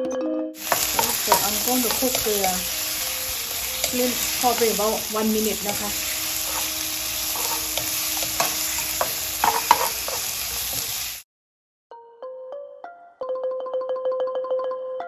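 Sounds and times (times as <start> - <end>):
shrimp sizzling in hot oil: 0.6 - 11.2
stirring strokes against a wok: 0.6 - 11.2.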